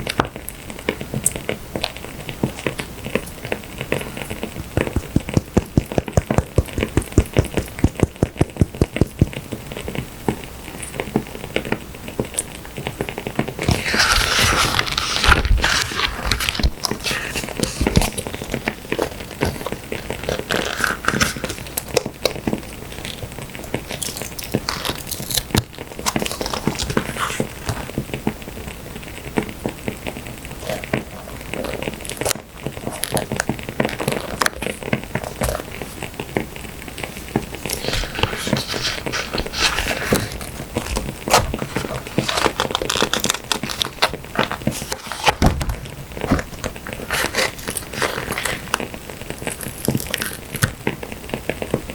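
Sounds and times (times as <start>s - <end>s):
crackling wood fire: 0.0s - 51.9s
paper rustling: 2.4s - 9.4s, 13.6s - 28.1s, 30.8s - 50.9s.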